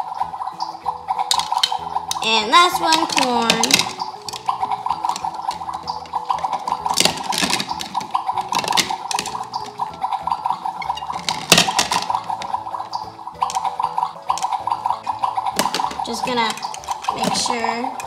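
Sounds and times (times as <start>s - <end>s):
toy water sound effect: 0.0s - 18.0s
plastic clicks and knocks: 2.8s - 10.0s, 10.9s - 14.7s, 15.5s - 17.5s.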